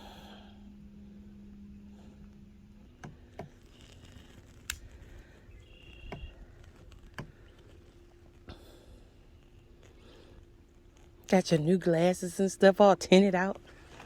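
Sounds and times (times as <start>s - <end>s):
faint steady hum: 0.0s - 14.0s
faint clicks and knocks: 2.9s - 8.6s.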